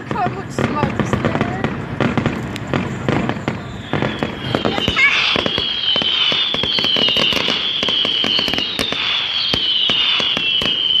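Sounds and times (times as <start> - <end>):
fireworks crackling: 0.0 - 11.0
firework whistles falling in pitch: 3.1 - 11.0.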